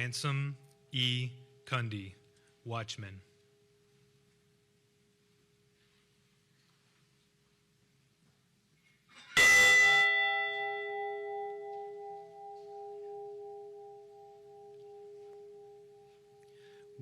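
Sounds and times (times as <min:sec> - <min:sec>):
bell ringing: 0:09.4 - 0:17.0.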